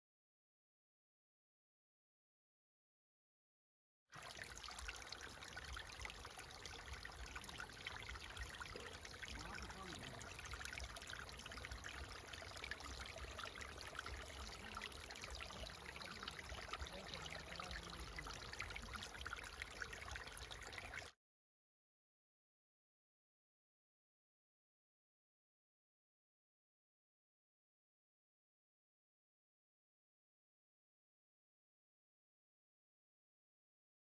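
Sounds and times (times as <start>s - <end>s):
stream water rushing: 4.2s - 21.0s.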